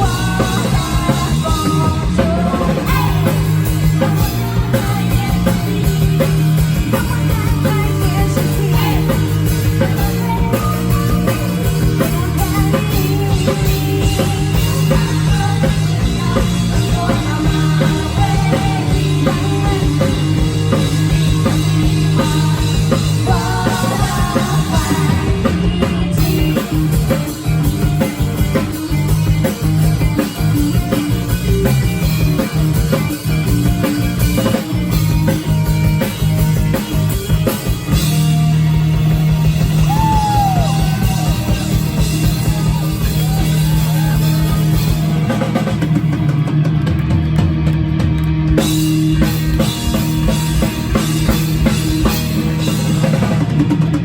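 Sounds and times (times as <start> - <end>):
person singing: 0.0 - 27.2
drum kit: 0.0 - 54.0
electric guitar: 0.0 - 54.0
rock band playing live: 0.0 - 54.0.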